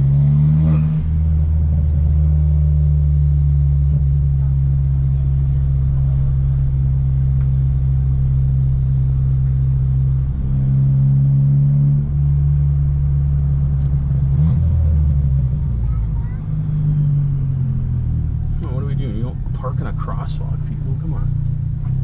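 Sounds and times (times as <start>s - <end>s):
car engine and road noise: 0.0s - 22.0s.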